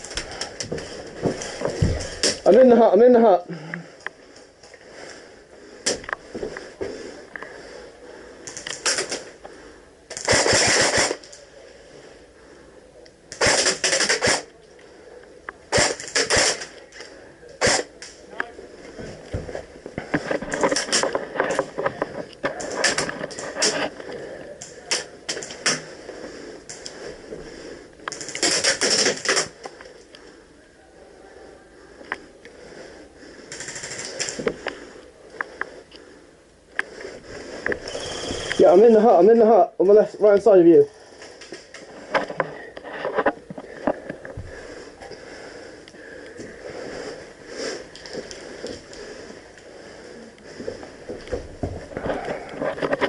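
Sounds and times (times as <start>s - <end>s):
airsoft guns firing bursts: 10.2s - 11.2s
airsoft rifle firing: 10.2s - 11.2s, 13.4s - 14.5s, 15.7s - 16.8s
rapid clicks: 33.5s - 34.8s.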